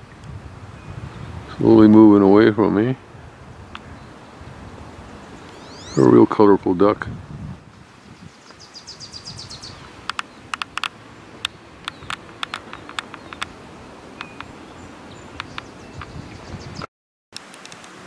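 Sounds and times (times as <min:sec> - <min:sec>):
bird trilling: 0:05.3 - 0:06.2, 0:08.3 - 0:16.8
sharp clicks and ticks: 0:10.1 - 0:13.6, 0:15.4 - 0:16.1.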